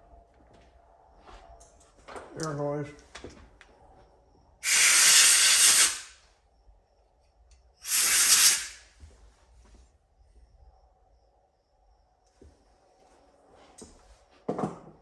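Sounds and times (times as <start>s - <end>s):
compressed air blasts: 4.6s - 6.2s, 7.8s - 8.9s.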